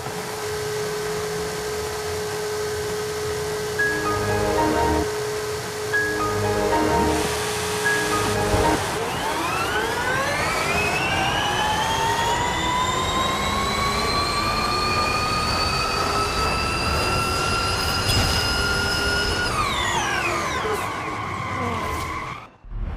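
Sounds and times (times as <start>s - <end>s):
motor whine rising in pitch: 3.8s - 17.7s.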